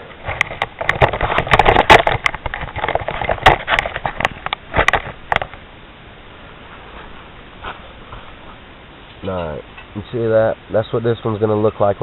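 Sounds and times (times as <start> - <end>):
drink can handling crackles: 0.1 - 5.6.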